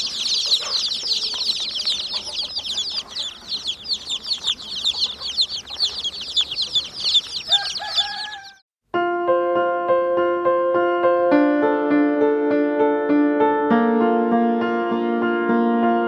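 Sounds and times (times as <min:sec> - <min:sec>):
chicks peeping: 0:00.0 - 0:08.6
lower longer calls: 0:00.0 - 0:08.6.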